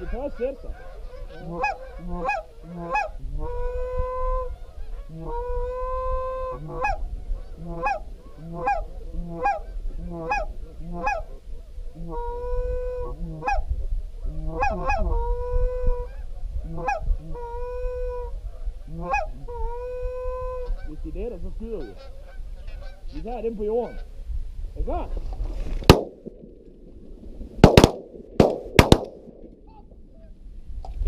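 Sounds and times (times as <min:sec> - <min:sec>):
geese honking: 0:00.0 - 0:11.4, 0:12.0 - 0:13.6, 0:14.4 - 0:24.2
wind rumble on microphone: 0:00.0 - 0:27.6, 0:28.3 - 0:31.0.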